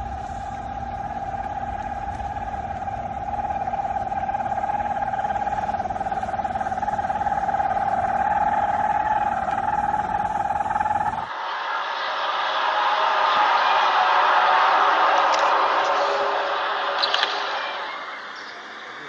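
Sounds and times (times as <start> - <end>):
low rumble: 0.0 - 11.3
loud droning tone: 0.0 - 17.0.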